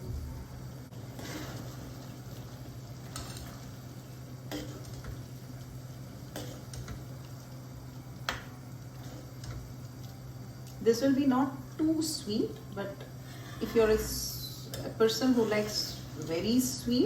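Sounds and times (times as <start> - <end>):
steady low hum: 0.0 - 17.0
spoon scraping a pan: 1.1 - 2.0, 4.4 - 5.2, 15.0 - 16.5.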